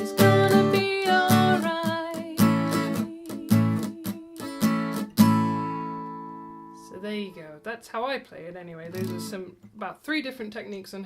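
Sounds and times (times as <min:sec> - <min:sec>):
acoustic guitar strumming: 0:00.0 - 0:07.9, 0:08.8 - 0:09.6.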